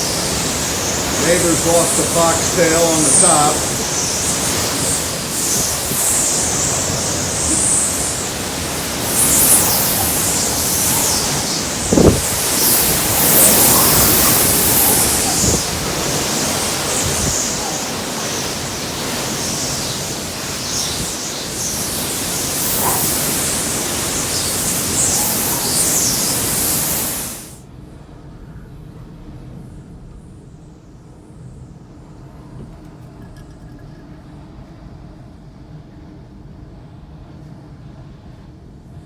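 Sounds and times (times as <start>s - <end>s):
hurricane wind and rain: 0.0s - 27.6s.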